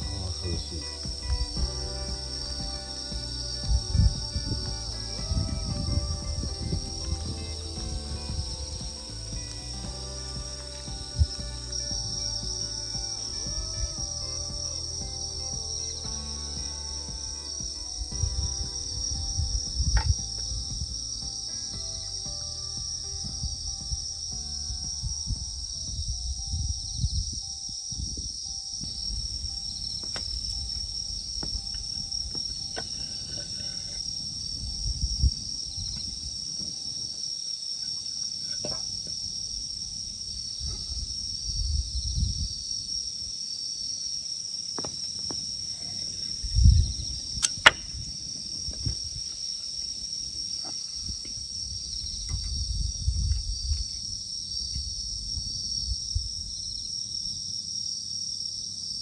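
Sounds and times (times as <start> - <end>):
low rumbles: 0.0 - 36.6
crickets and insects chirring: 0.0 - 59.0
sharp click: 47.4 - 48.0.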